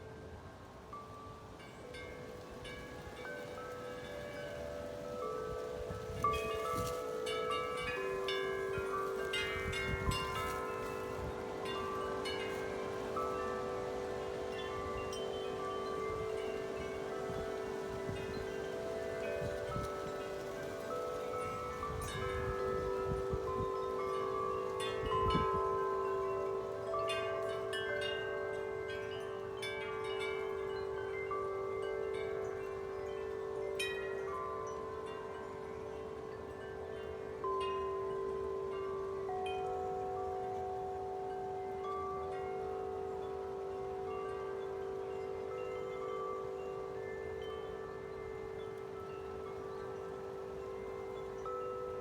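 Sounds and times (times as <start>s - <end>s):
wind chimes ringing: 0.0s - 52.0s
wind rumble on microphone: 2.0s - 26.3s.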